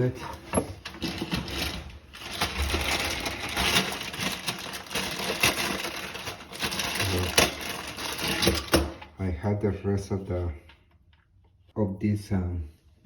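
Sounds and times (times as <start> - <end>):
plastic crinkling and rustling: 0.0 - 9.1.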